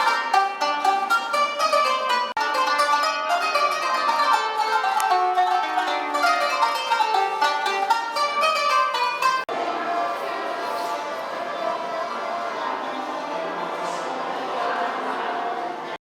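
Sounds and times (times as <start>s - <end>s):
plucked string instrument music: 0.0s - 10.0s.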